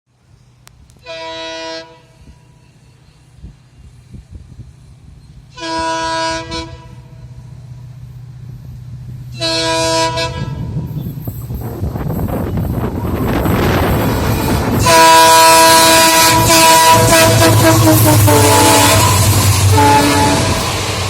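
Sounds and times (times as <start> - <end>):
train rumble: 0.1 - 21.0
locomotive engine drone: 0.2 - 21.0
locomotive horn blasts: 1.0 - 2.8, 5.5 - 7.4, 9.3 - 10.9, 14.7 - 21.0.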